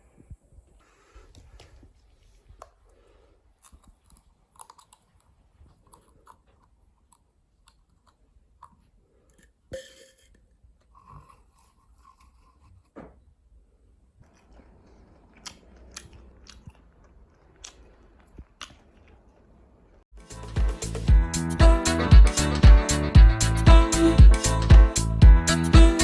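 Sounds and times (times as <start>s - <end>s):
faint chewing and crunching: 0.7s - 20.0s.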